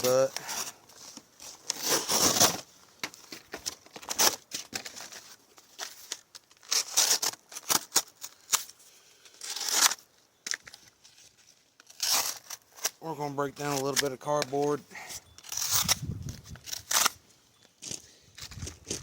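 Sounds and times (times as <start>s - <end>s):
cardboard scraping and tearing: 0.0s - 8.7s, 9.4s - 10.0s, 11.1s - 13.0s, 15.4s - 17.2s.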